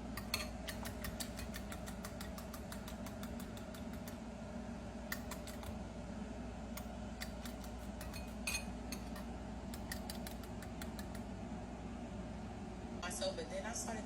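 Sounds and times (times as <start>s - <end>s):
steady low hum: 0.0s - 14.0s
utensils and dishes clicking: 0.1s - 4.2s, 5.1s - 5.7s, 7.2s - 11.3s.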